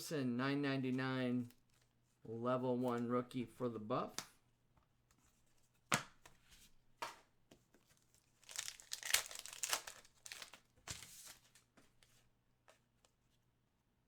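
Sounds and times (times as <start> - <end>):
wrapper crinkling and tearing: 8.1 - 11.6.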